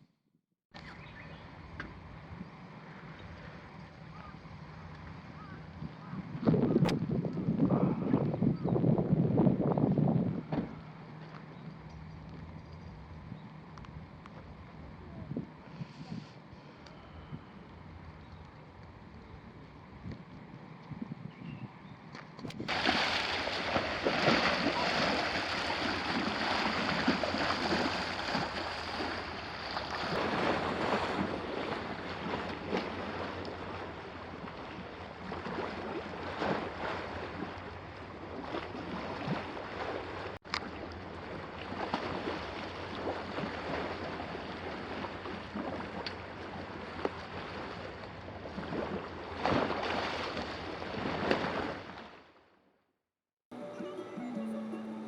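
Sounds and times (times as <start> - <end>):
wind noise on microphone: 5.4 - 10.8, 14.9 - 17.6, 19.2 - 23.0
waves washing onto beach: 22.6 - 52.0.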